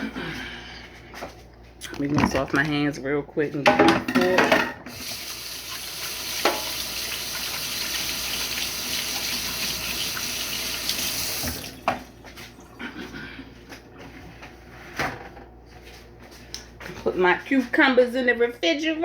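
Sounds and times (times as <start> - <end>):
sink faucet running: 4.9 - 12.8.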